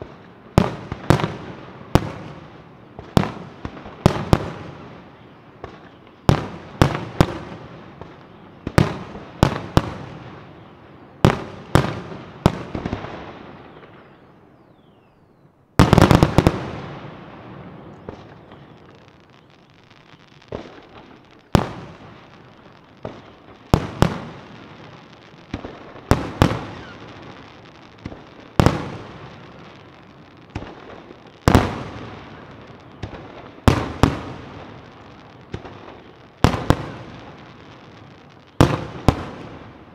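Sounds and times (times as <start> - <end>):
fireworks exploding: 0.0 - 39.9.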